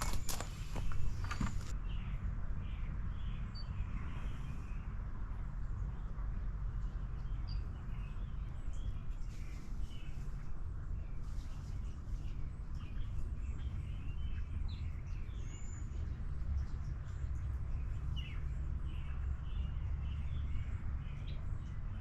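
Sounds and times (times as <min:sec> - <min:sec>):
footsteps: 0:00.0 - 0:01.7
low outdoor rumble: 0:00.0 - 0:22.0
songbirds chirping: 0:00.0 - 0:22.0.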